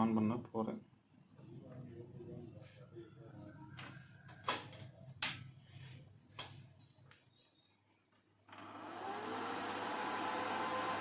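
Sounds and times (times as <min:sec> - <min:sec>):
welding machine cooling fan whirring: 0:08.6 - 0:11.0.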